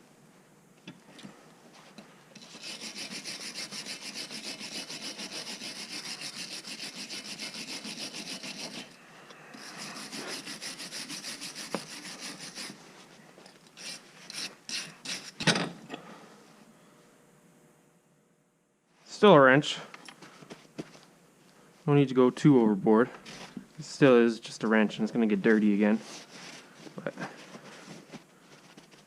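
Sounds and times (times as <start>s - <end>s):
scrubbing rusty metal threads: 2.4s - 12.8s, 13.7s - 15.4s.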